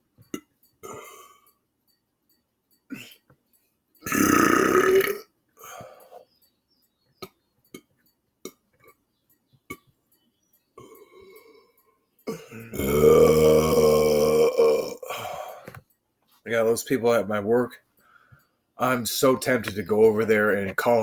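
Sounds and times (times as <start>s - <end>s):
man burping loudly: 0.4s - 1.5s, 2.9s - 3.2s, 4.0s - 6.2s, 12.3s - 15.8s.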